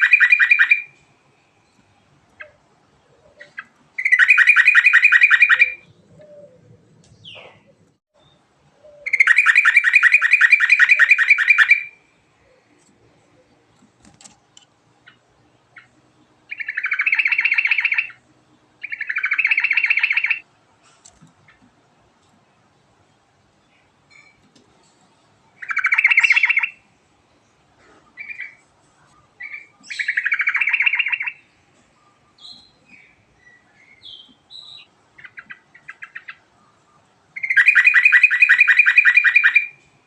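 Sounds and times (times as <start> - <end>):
bulbul singing: 3.3 - 12.0, 18.8 - 20.4, 25.6 - 26.8, 29.4 - 39.9.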